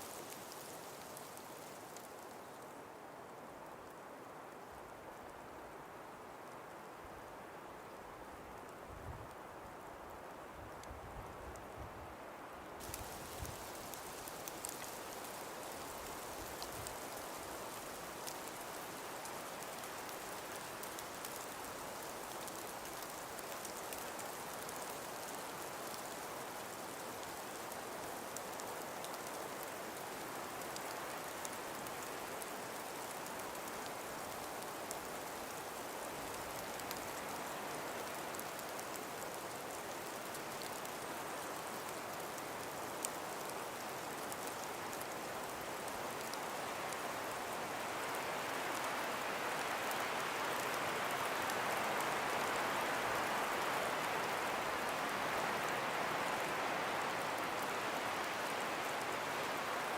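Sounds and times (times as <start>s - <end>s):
breeze through forest: 0.0s - 59.9s
faint ticks: 7.8s - 11.7s, 12.8s - 55.4s.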